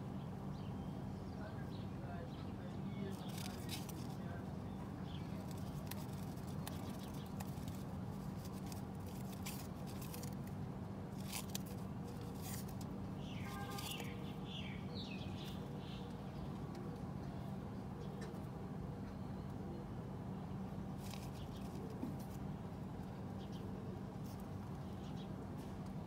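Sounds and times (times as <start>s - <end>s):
steady low hum: 0.0s - 26.0s
light clicks and scratches: 3.0s - 17.4s, 21.0s - 26.0s
high bird chirps: 13.2s - 16.0s.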